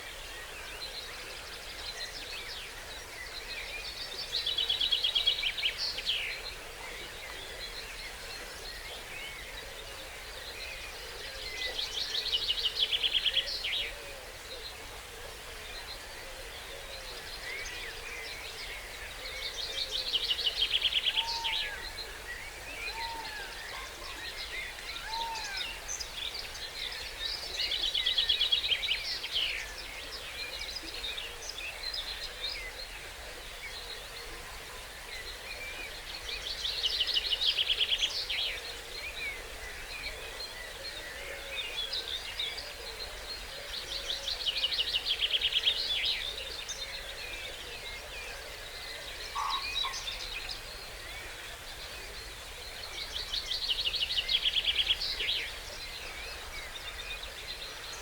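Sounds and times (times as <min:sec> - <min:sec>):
birds calling and singing: 0:40.7 - 0:58.0.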